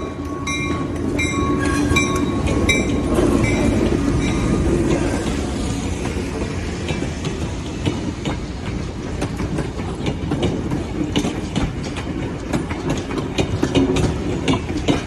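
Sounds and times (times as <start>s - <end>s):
train rumbling past: 0.0s - 15.0s
wheels clicking over rail joints: 0.0s - 15.0s.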